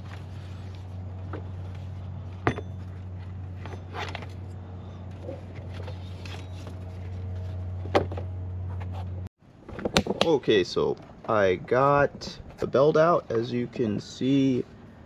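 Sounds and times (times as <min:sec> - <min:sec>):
steady low hum: 0:00.0 - 0:09.7
scraping and rustling handling noises: 0:00.0 - 0:10.4.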